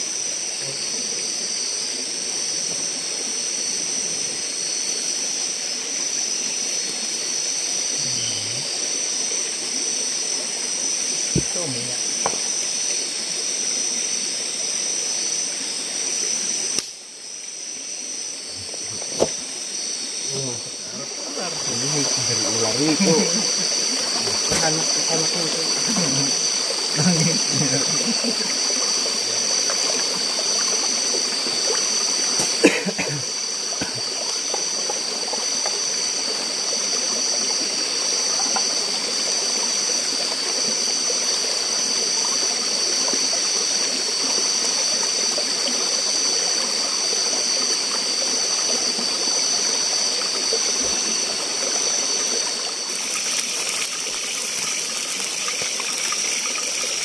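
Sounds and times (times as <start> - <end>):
stream rushing: 18.4 - 41.9, 46.8 - 57.0.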